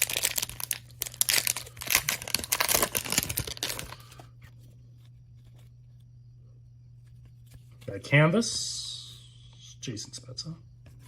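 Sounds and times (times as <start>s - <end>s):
wrapper tearing and crinkling: 0.0s - 4.1s.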